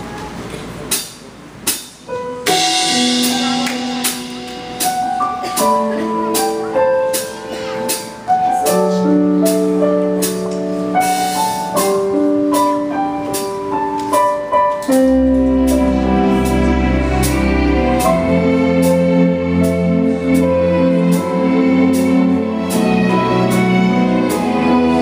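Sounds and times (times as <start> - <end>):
piano chords over steady beat: 1.7 - 25.0
deep bass: 15.0 - 25.0.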